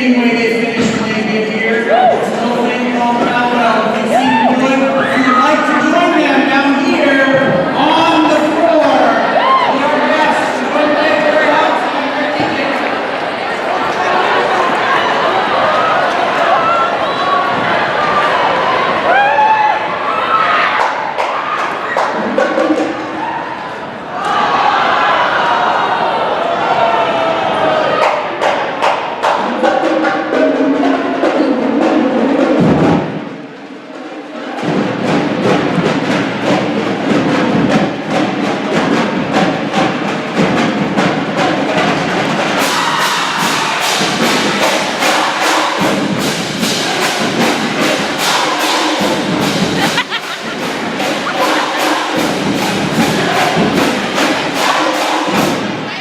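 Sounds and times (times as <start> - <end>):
drums beating: 0.0 - 56.0
marching band playing: 20.7 - 23.2, 28.0 - 56.0.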